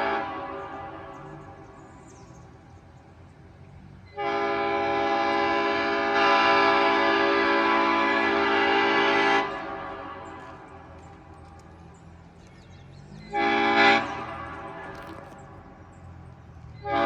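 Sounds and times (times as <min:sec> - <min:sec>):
train horn chord: 0:04.2 - 0:10.1.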